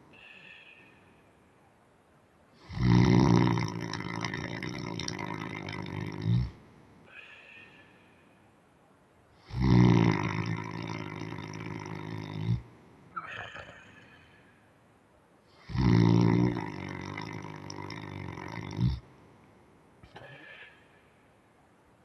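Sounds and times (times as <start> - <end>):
quiet breath: 0.0 - 1.8, 6.4 - 9.6, 12.6 - 14.8, 18.9 - 21.6
man snoring loudly: 2.6 - 6.6, 9.5 - 12.6, 15.6 - 19.0.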